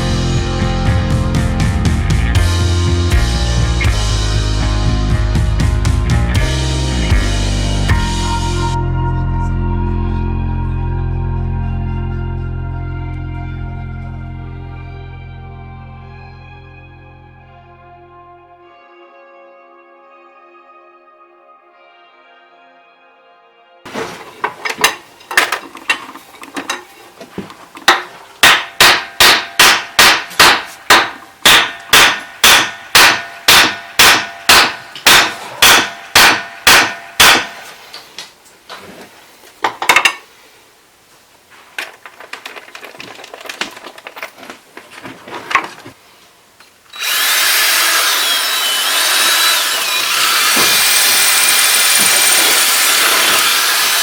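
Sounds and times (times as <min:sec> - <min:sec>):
hammer blows: 0:27.9 - 0:37.8
power tool running: 0:46.9 - 0:54.0.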